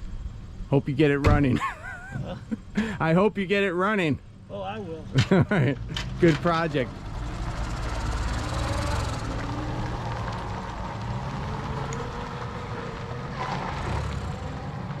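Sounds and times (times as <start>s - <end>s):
vehicle engine running: 4.8s - 15.0s.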